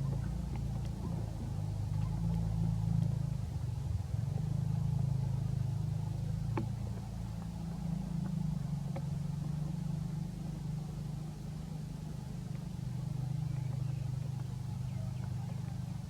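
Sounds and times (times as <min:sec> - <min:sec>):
low engine hum: 0:00.0 - 0:16.0
faint clicks: 0:00.1 - 0:03.5.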